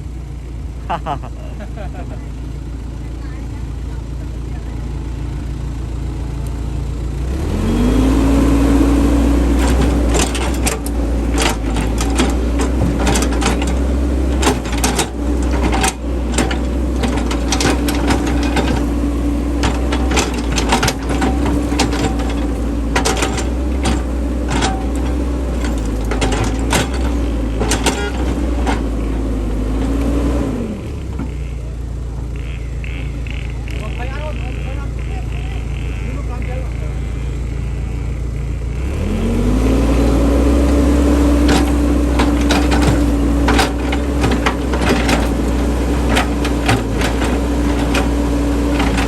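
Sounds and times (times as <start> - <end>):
sharp clicks and knocks: 9.5 - 30.2, 40.7 - 49.0.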